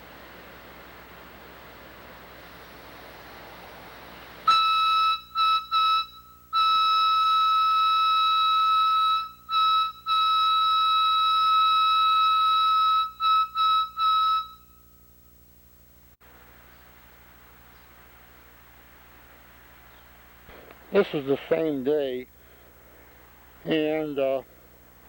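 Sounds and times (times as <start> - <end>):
steam whistle blasts: 4.4 - 15.1.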